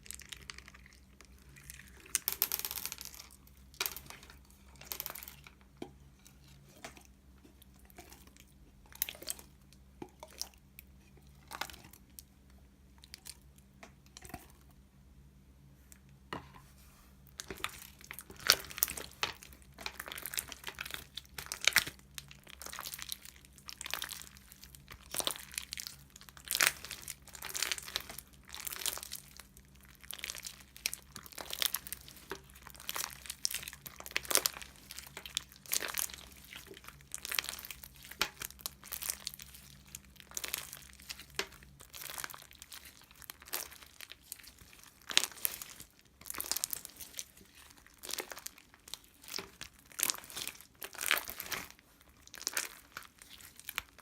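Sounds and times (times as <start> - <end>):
crinkling and crackling: 0.0 - 14.8, 15.8 - 54.0.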